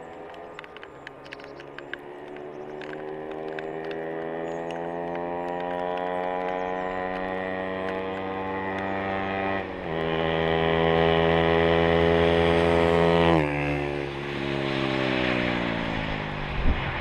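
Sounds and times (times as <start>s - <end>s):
light ticks: 0.0s - 7.3s
motorcycle engine running: 0.0s - 16.7s.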